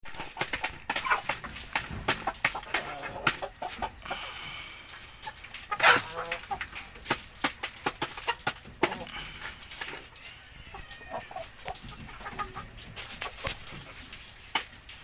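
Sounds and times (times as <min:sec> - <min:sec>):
chickens clucking: 0:00.0 - 0:15.0
chicken squawk: 0:05.6 - 0:06.6, 0:09.8 - 0:13.5.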